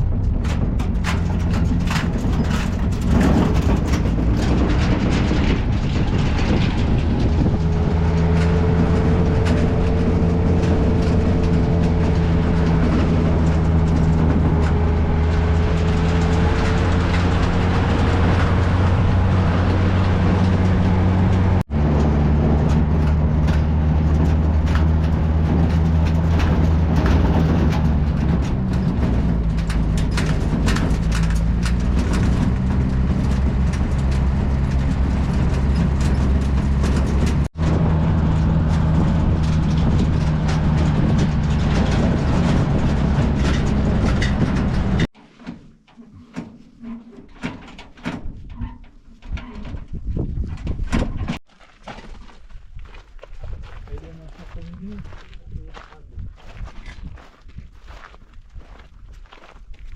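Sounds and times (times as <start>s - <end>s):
engine running steadily: 0.0s - 45.1s
light knocks and rattles: 0.0s - 52.2s.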